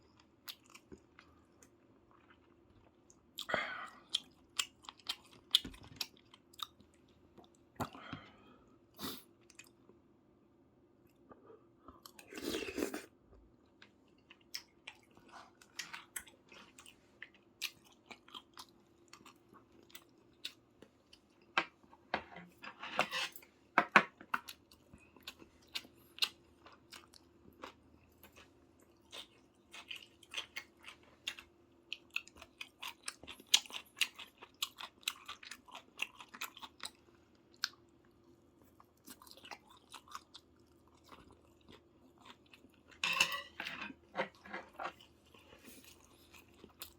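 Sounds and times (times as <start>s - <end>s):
faint steady hum: 0.0s - 46.9s
person chewing food: 0.1s - 8.4s, 11.0s - 22.1s, 24.3s - 46.9s.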